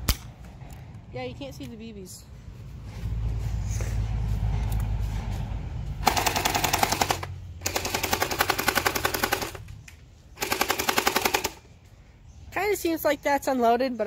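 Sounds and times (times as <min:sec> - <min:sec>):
airsoft gun firing full auto: 0:06.0 - 0:09.6, 0:10.4 - 0:11.6.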